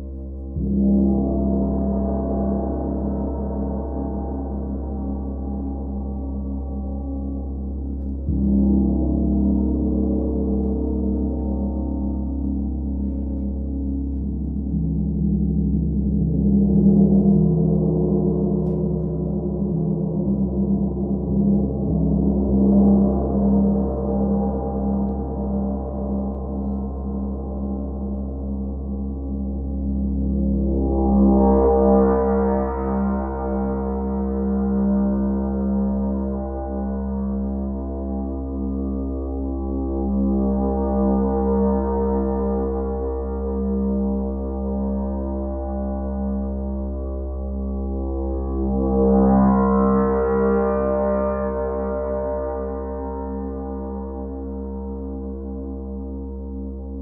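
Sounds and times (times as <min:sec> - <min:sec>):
deep ringing gong-like drone: 0:00.0 - 0:57.0.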